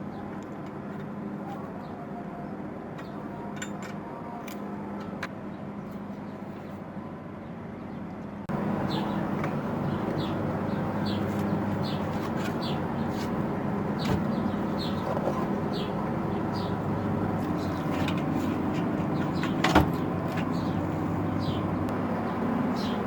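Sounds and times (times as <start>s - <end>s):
birds chirping: 0.0s - 6.8s, 7.4s - 23.0s
low mechanical hum: 0.0s - 23.0s.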